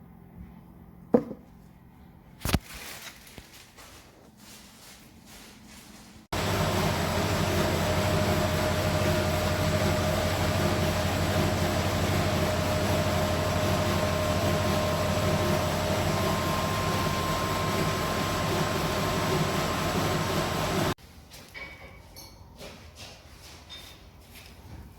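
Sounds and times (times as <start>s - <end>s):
machine humming with faint whine: 6.4s - 21.0s.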